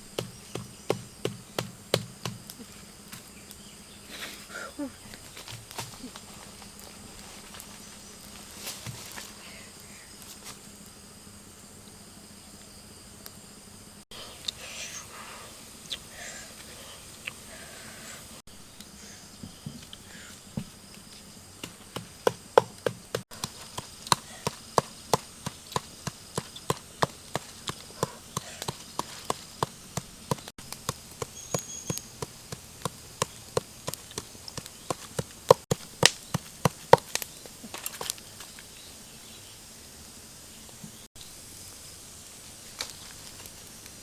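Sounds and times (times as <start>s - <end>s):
blade chopping on wood: 0.0s - 2.6s, 21.6s - 38.2s.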